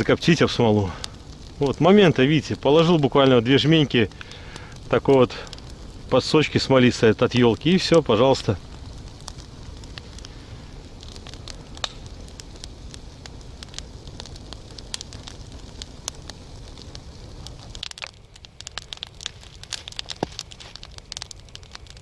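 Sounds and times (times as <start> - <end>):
campfire crackling and popping: 0.0 - 22.0.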